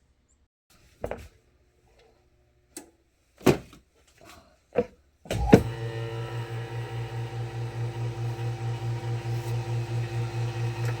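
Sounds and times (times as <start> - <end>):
pulsing machine hum: 5.4 - 11.0.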